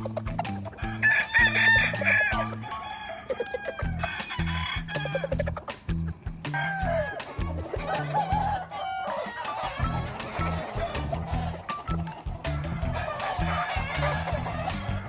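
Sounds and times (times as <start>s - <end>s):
music with repeating bass line: 0.0s - 2.7s, 3.8s - 8.7s, 9.5s - 15.0s
rooster crowing: 0.8s - 5.4s, 6.5s - 11.0s, 12.8s - 15.0s.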